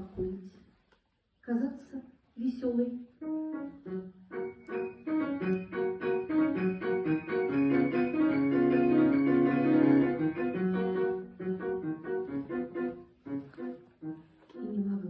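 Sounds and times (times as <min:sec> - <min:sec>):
piano music: 0:03.2 - 0:15.0.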